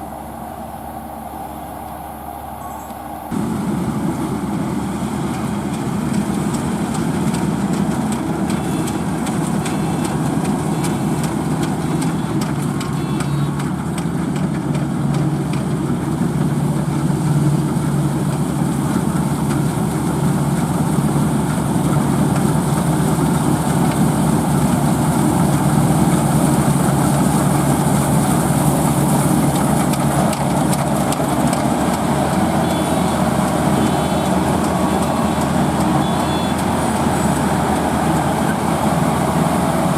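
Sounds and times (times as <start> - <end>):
diesel farm machinery running: 0.0 - 39.9.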